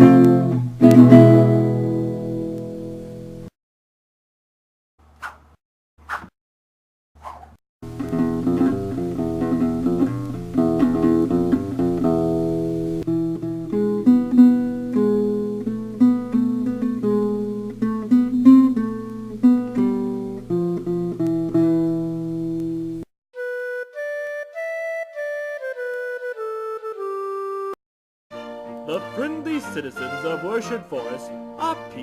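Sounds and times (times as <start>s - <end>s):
acoustic guitar music: 0.0s - 3.5s, 7.8s - 23.1s, 28.4s - 32.0s
keyboard melody: 7.9s - 22.6s, 23.4s - 32.0s.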